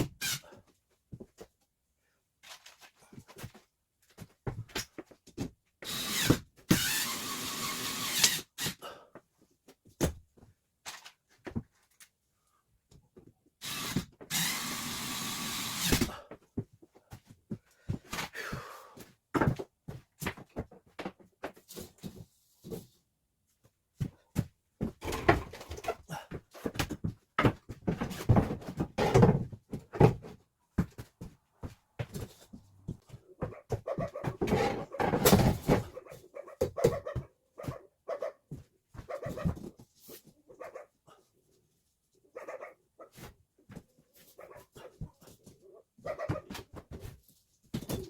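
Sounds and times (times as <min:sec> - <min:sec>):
power drill driving screws: 0:05.8 - 0:08.8, 0:13.6 - 0:16.1.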